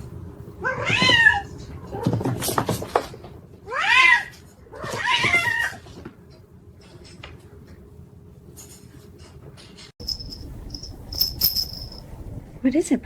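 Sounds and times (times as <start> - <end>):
cat meowing: 0.6 - 1.5.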